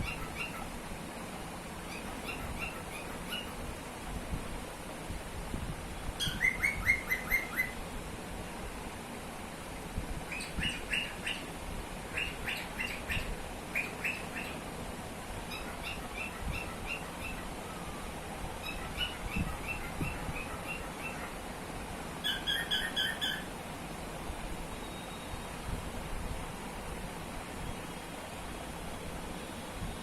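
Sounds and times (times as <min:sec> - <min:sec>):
cockatiel chirping: 0:00.0 - 0:00.7, 0:01.9 - 0:03.6, 0:06.2 - 0:07.8, 0:15.5 - 0:17.4, 0:18.6 - 0:21.4, 0:22.2 - 0:23.5.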